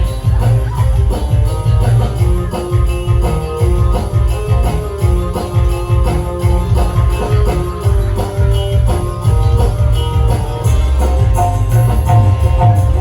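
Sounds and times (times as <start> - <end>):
heavy bass beat: 0.0 - 13.0
jingling percussion: 0.0 - 13.0
sustained melody notes: 0.0 - 13.0.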